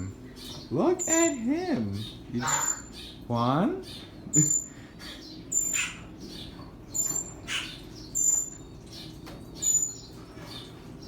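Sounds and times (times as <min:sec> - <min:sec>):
birds chirping: 0:00.0 - 0:11.0.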